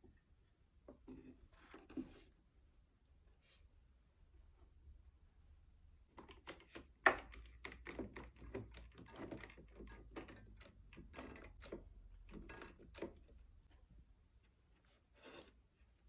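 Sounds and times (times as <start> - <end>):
wood pieces and tools clicking: 6.2 - 13.4.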